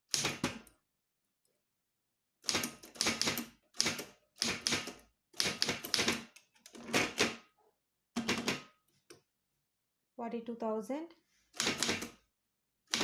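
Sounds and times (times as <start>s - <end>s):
manual typewriter typing: 2.4s - 7.4s, 11.6s - 12.2s.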